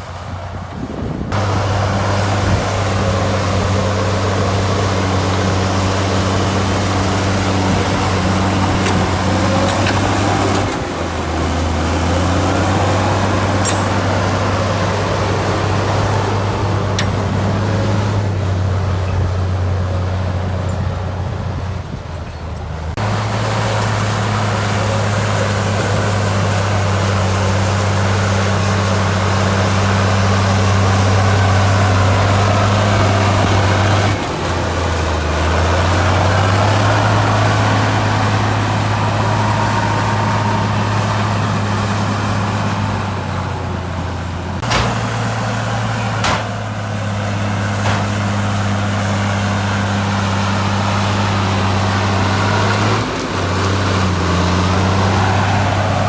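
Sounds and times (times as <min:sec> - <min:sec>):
heavy diesel engine droning: 0:00.0 - 0:56.0
sharp metal clanks: 0:13.3 - 0:14.7.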